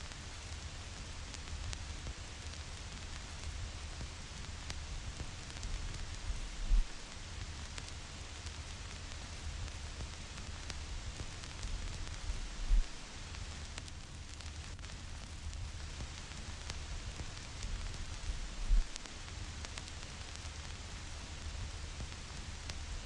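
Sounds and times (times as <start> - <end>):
vinyl crackles and pops: 0.0 - 23.0
vinyl record hiss: 0.0 - 23.0
low rumble: 6.2 - 7.0, 12.0 - 13.0, 18.1 - 19.0
low thumps: 6.4 - 7.0, 12.5 - 13.0.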